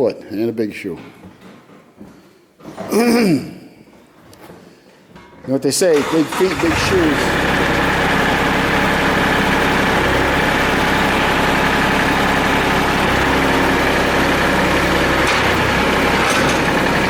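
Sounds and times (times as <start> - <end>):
tractor diesel engine idling: 6.0 - 17.0.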